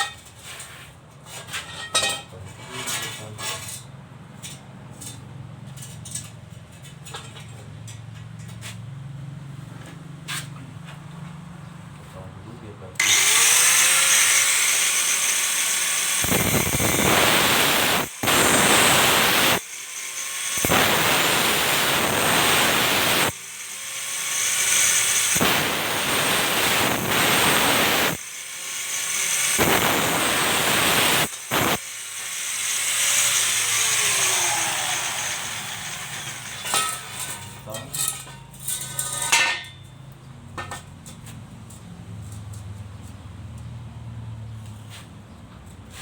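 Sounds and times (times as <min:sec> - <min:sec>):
angle grinder disc whining: 0:13.0 - 0:39.3
angle grinder cutting metal: 0:13.0 - 0:39.4.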